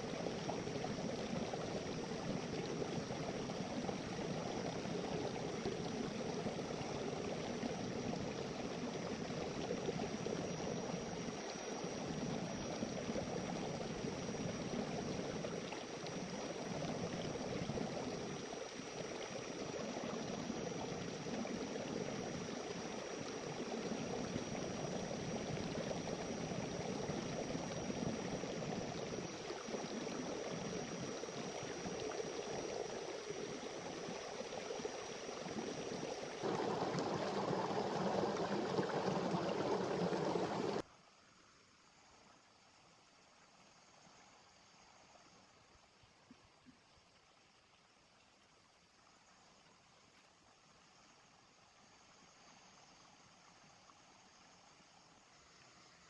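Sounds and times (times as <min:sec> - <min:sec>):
river water rushing: 0:36.4 - 0:40.8.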